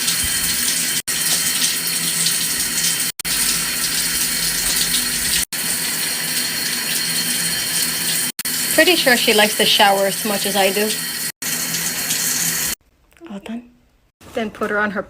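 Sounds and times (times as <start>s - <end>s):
shower water spraying: 0.0s - 12.8s.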